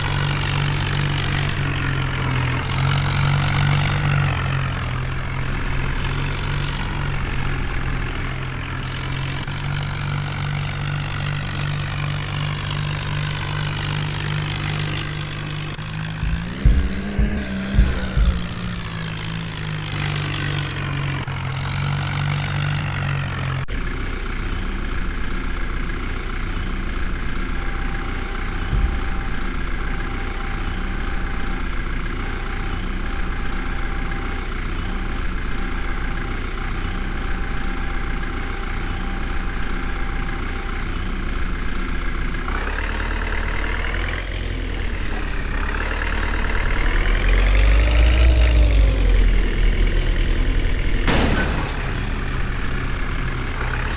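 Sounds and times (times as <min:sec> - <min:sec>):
diesel engine running: 0:00.0 - 0:53.9.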